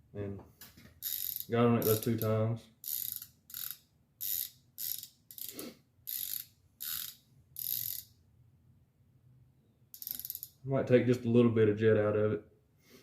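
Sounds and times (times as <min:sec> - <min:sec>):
ratchet wrench clicking: 0:01.0 - 0:08.1, 0:10.0 - 0:10.6.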